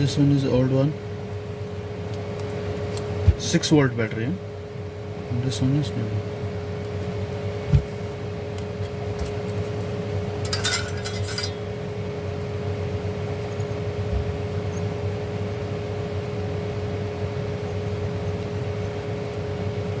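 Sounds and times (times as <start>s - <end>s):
steady background hum: 0.0s - 20.0s
small parts clinking: 10.4s - 11.7s.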